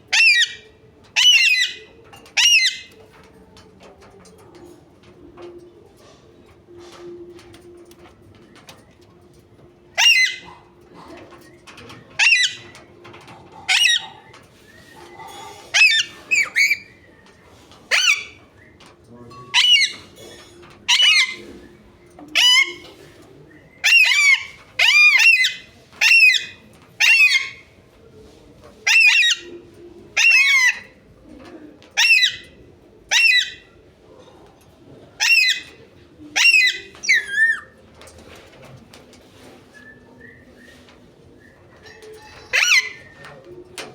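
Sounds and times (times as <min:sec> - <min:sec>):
parrot calling: 0:00.1 - 0:00.6, 0:01.2 - 0:01.8, 0:02.4 - 0:02.9, 0:10.0 - 0:10.6, 0:12.2 - 0:12.7, 0:13.6 - 0:14.3, 0:14.9 - 0:17.0, 0:17.9 - 0:18.4, 0:19.5 - 0:20.2, 0:20.9 - 0:21.6, 0:22.4 - 0:22.9, 0:23.8 - 0:27.7, 0:28.8 - 0:29.5, 0:30.2 - 0:31.0, 0:32.0 - 0:32.5, 0:33.1 - 0:33.7, 0:35.2 - 0:35.8, 0:36.4 - 0:37.8, 0:42.2 - 0:43.2.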